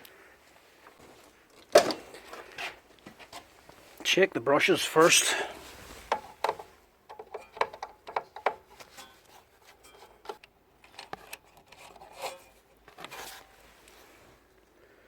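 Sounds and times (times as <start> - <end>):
clicks and knocks on saw motor: 6.1 - 8.7.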